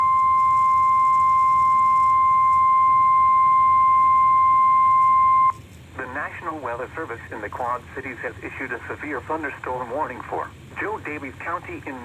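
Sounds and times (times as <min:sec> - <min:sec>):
steady alarm tone: 0:00.0 - 0:05.6.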